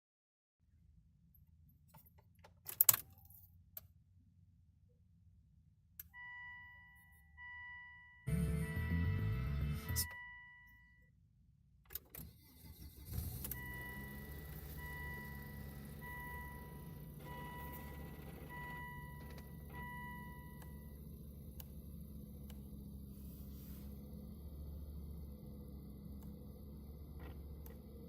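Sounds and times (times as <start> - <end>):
dashboard warning chime: 6.1 - 11.1, 13.5 - 21.1
ignition click: 11.9 - 22.7, 26.1 - 26.5, 27.2 - 28.0
low engine hum: 12.6 - 28.0.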